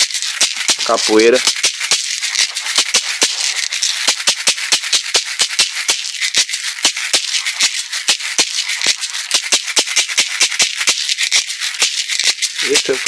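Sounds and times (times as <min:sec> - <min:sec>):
basket rattle shaken: 0:00.0 - 0:13.0.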